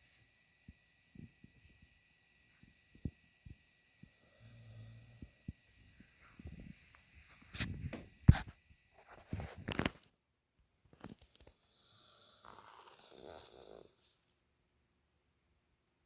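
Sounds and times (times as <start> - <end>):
dog snoring: 4.2 - 5.5, 11.8 - 14.3.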